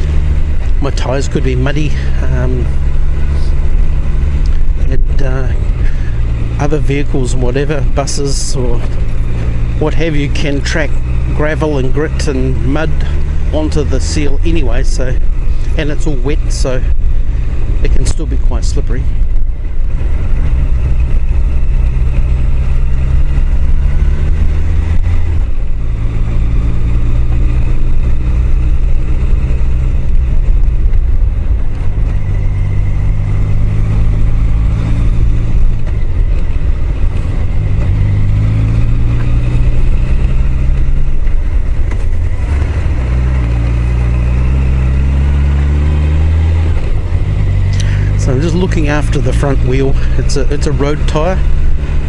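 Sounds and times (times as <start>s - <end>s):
motorcycle engine revving: 0.0s - 52.0s
wind rumble on microphone: 11.9s - 44.8s.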